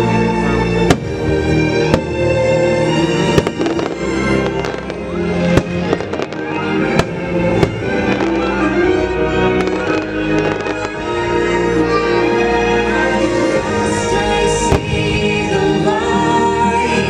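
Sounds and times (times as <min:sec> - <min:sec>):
loud orchestral music: 0:00.0 - 0:17.0
fireworks bursting with bangs: 0:00.9 - 0:02.4, 0:03.3 - 0:08.6, 0:09.5 - 0:11.2, 0:14.6 - 0:15.3.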